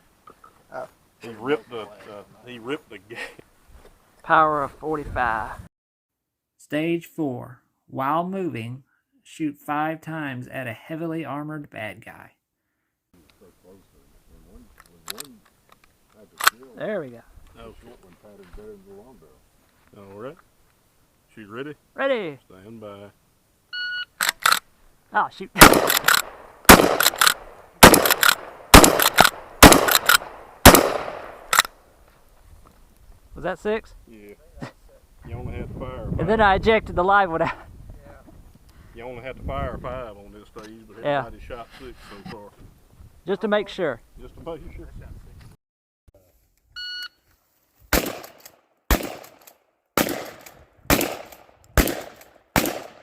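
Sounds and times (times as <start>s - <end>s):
gunshots with echo: 25.6s - 31.6s, 48.0s - 49.4s, 50.0s - 53.0s
shotgun shots: 25.6s - 31.7s, 47.9s - 49.4s, 50.0s - 53.0s.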